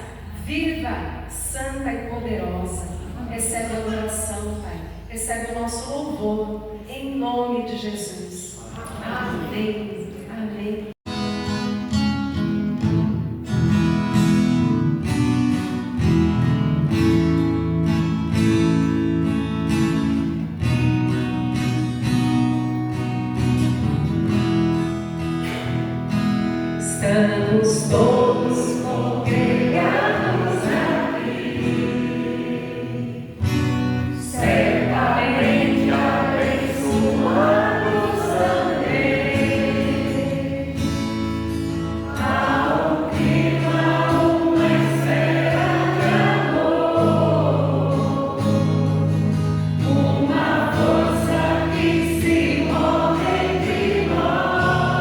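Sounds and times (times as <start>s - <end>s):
guitar chords: 11.1s - 55.0s
voices singing a hymn: 26.8s - 55.0s.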